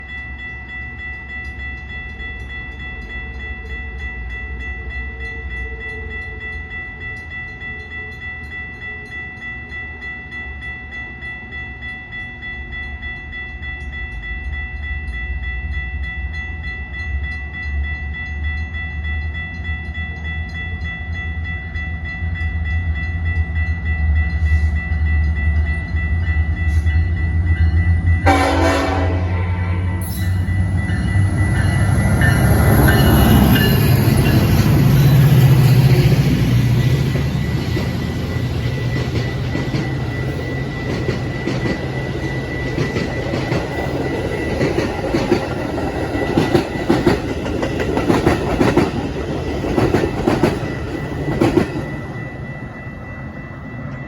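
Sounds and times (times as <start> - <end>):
crossing warning bell ringing: 0.0 - 54.0
diesel train rumble: 11.2 - 54.0
train horn blast: 28.2 - 30.3.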